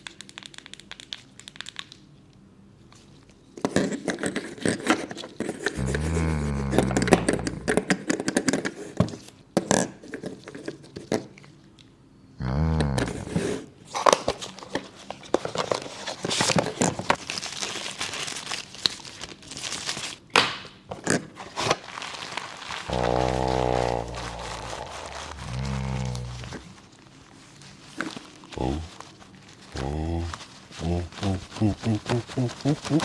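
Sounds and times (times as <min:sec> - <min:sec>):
packaging tearing and crinkling: 0:15.7 - 0:20.2, 0:21.0 - 0:26.9.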